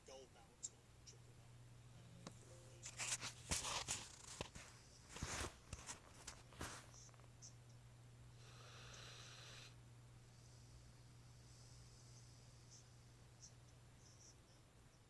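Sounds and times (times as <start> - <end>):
dog snoring: 8.4 - 9.8.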